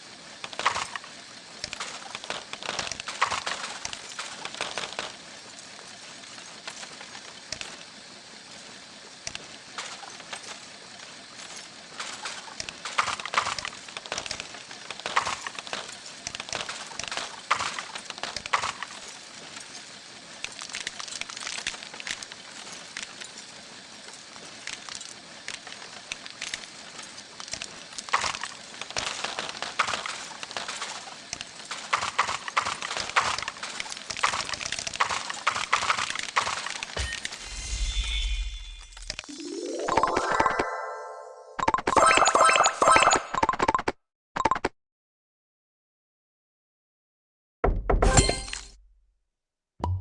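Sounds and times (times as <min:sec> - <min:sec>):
low hum: 0:37.0 - 0:41.6.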